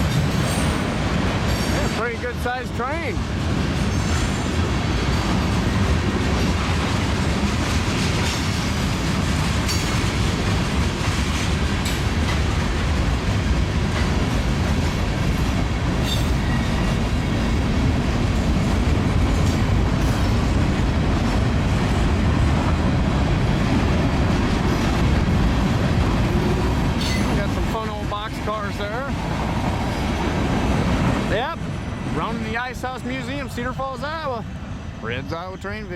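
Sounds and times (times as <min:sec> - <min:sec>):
freight train rolling past: 0:00.0 - 0:35.9
sharp clacks of wheels on rail: 0:03.2 - 0:28.0.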